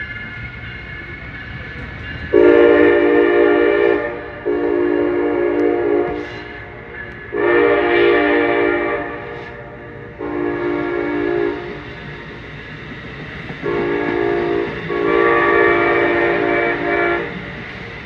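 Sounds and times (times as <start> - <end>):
train rumbling: 0.0 - 18.0
locomotive air horn chord: 2.3 - 11.8, 13.6 - 17.4.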